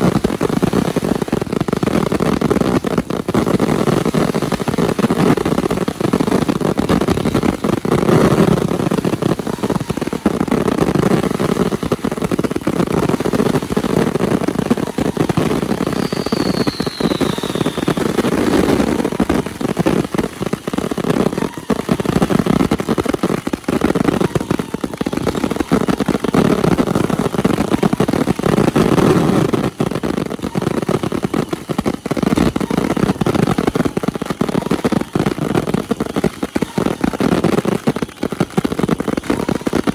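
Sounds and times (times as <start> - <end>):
fireworks bangs and crackling: 0.0 - 39.9
falling firework whistle: 3.4 - 27.8.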